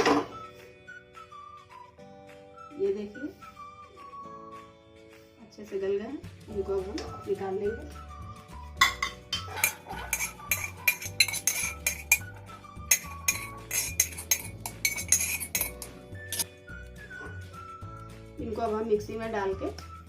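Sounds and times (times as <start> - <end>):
spoon scraping metal pot: 8.8 - 16.4.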